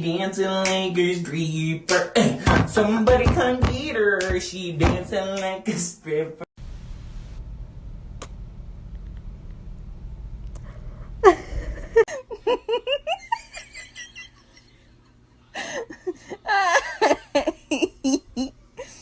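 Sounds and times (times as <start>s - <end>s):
laughter in pulsing bursts: 11.2s - 19.0s.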